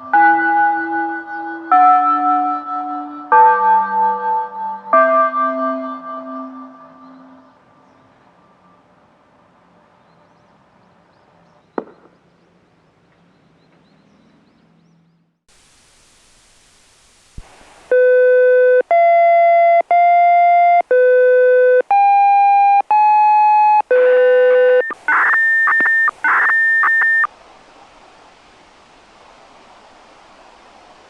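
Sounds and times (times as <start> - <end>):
radio hiss and static: 15.5 - 18.5, 24.8 - 27.3
electronic beeps: 17.9 - 27.3.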